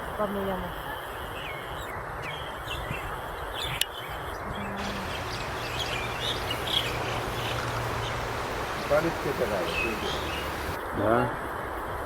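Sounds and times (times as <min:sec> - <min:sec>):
outdoor background noise: 0:00.0 - 0:12.0
small birds chirping: 0:01.4 - 0:10.8.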